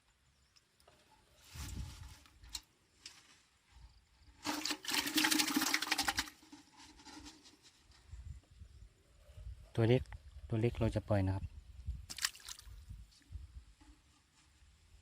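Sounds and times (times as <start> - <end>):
water splashing: 4.4 - 6.4, 12.1 - 12.8.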